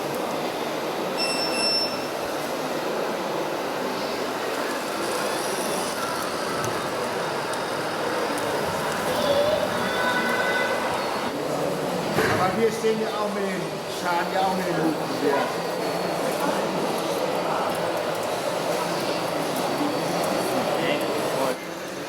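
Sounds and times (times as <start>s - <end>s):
short high-pitched beep: 1.2s - 2.1s
small electric motors whirring: 4.6s - 10.9s.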